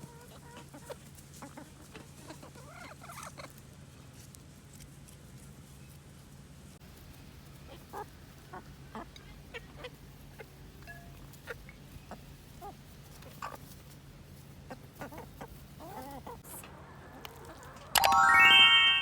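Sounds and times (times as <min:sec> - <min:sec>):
chickens clucking softly: 0:00.0 - 0:03.7, 0:06.9 - 0:17.9.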